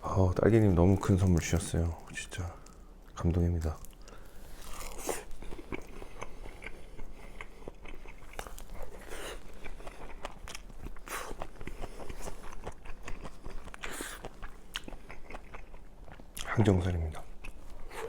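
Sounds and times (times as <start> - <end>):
person chewing food: 3.8 - 16.5, 17.1 - 18.0.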